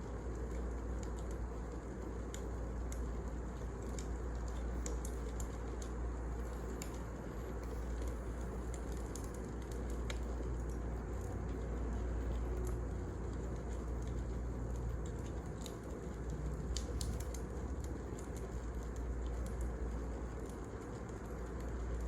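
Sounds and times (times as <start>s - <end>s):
wood fire crackling: 0.0s - 22.0s.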